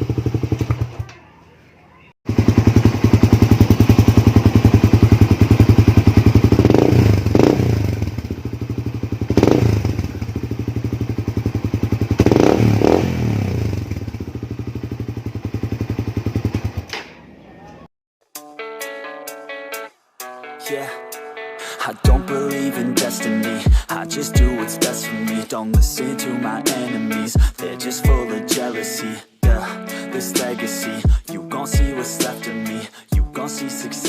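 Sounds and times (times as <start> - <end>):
motorcycle engine idling and revving: 0.0 - 1.1, 2.3 - 17.0.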